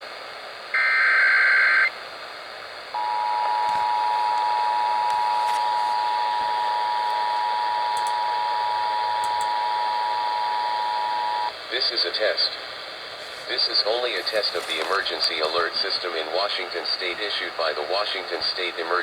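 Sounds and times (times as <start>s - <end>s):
radio static hiss: 0.0s - 19.0s
warbling data tone: 0.8s - 1.9s.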